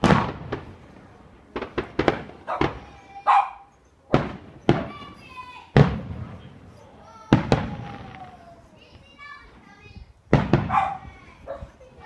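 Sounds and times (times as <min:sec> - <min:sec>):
fireworks banging: 0:00.0 - 0:12.0
dog barking: 0:02.4 - 0:03.8, 0:10.6 - 0:12.0.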